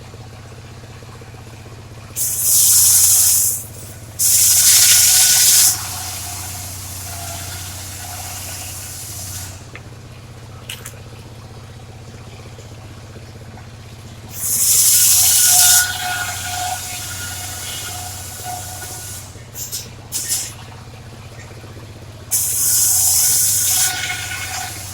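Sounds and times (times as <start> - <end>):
saw blade cutting wood: 2.2 - 9.6, 14.3 - 20.6, 22.3 - 24.9
circular saw humming: 2.2 - 9.8, 14.3 - 20.7, 22.3 - 24.9.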